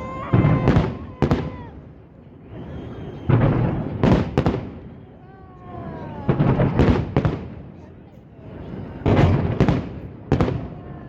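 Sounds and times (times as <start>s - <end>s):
fireworks deep booms: 0.0s - 5.0s, 6.1s - 7.9s, 8.6s - 11.0s
fireworks rumble: 0.0s - 11.0s
fireworks sharp cracks: 3.2s - 4.9s, 6.2s - 7.8s, 8.9s - 10.8s.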